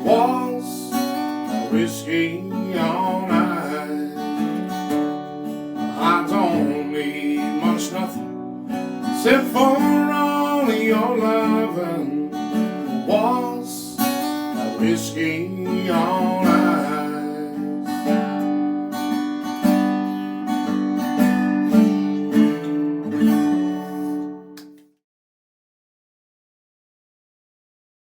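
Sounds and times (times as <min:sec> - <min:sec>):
person singing wordless notes: 0:00.0 - 0:01.0, 0:01.7 - 0:04.2, 0:06.0 - 0:08.2, 0:14.8 - 0:17.8
acoustic guitar strumming: 0:00.0 - 0:24.8.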